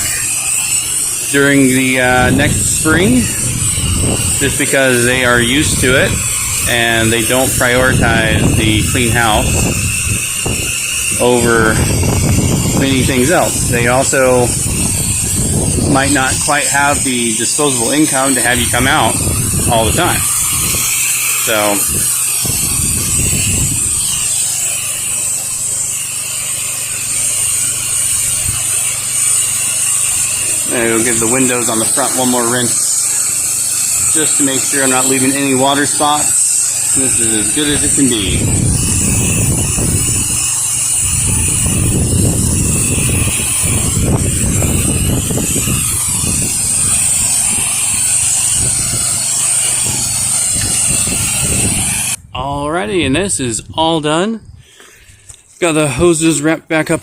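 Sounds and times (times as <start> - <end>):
wind buffeting microphone: 0.0 - 24.8, 27.4 - 54.7
pressure washer water spraying: 0.0 - 52.2
pump engine humming: 0.0 - 52.2.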